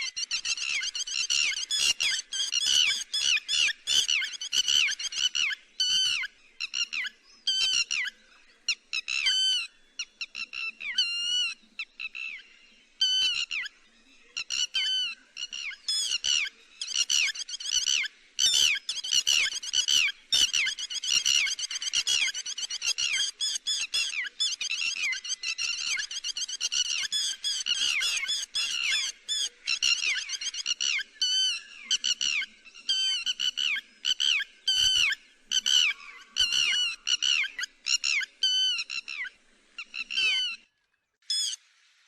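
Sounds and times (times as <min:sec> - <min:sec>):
lapwing calls: 0:00.0 - 0:41.6.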